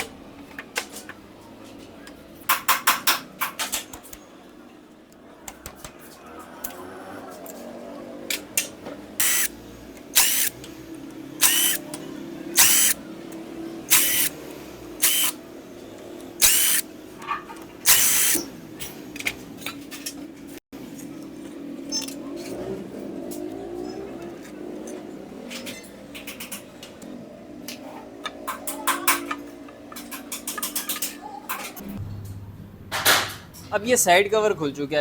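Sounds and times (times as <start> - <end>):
handheld power tool bursts: 9.2 - 10.6, 11.4 - 12.0, 12.6 - 13.0, 13.9 - 14.3, 15.0 - 15.4, 16.4 - 16.9, 17.8 - 18.5.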